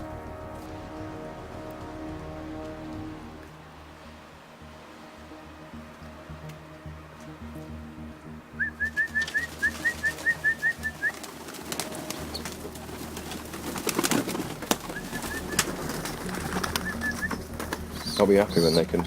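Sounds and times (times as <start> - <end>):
rustling: 9.0 - 19.0
young pigeon peeping: 14.7 - 19.0.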